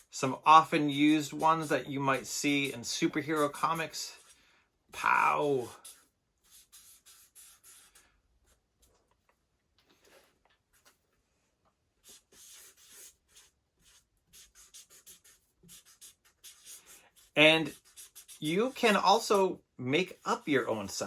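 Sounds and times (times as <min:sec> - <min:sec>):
pen scratching on paper: 0:00.0 - 0:04.4, 0:05.0 - 0:08.6, 0:12.0 - 0:19.4, 0:20.0 - 0:20.9.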